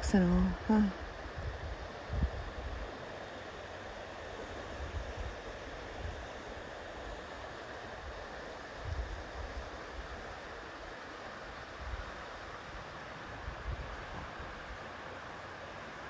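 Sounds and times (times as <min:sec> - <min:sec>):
wind rumble on microphone: 0:00.0 - 0:03.0, 0:04.5 - 0:06.3, 0:08.0 - 0:10.3, 0:11.8 - 0:15.0
river water rushing: 0:02.8 - 0:16.0.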